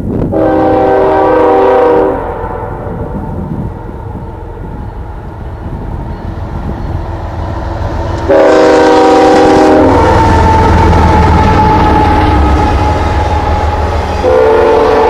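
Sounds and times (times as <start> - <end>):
freight train rumbling: 0.0 - 15.0
train horn blast: 0.3 - 4.6, 8.2 - 15.0.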